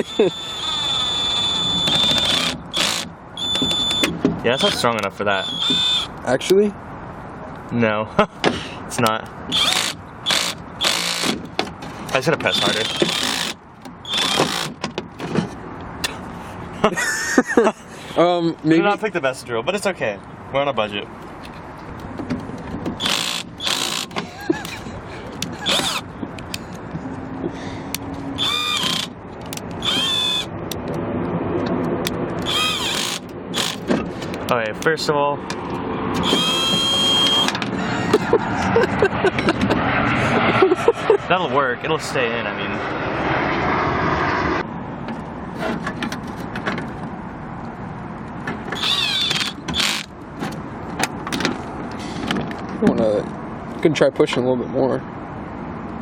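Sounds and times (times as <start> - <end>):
short high squeal: 0.0 - 2.2, 36.2 - 37.5
drill running in spurts: 0.0 - 3.1, 9.5 - 11.3, 12.6 - 14.8, 23.0 - 24.1, 28.4 - 29.1, 29.8 - 30.5, 32.4 - 33.8, 48.8 - 50.1
high squeaks: 0.0 - 6.1, 12.4 - 14.8, 25.5 - 26.1, 28.4 - 29.2, 29.8 - 30.5, 32.4 - 33.9, 36.2 - 37.5, 48.7 - 50.1
tool handling clicks: 21.2 - 26.8, 27.9 - 31.0.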